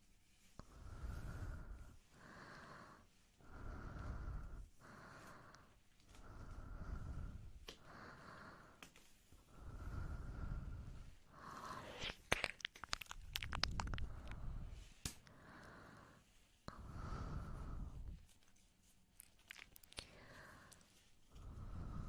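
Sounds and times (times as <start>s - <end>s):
slow breaths: 0.3s - 22.0s
wet mouth clicks and smacks: 11.8s - 15.3s, 19.2s - 20.8s.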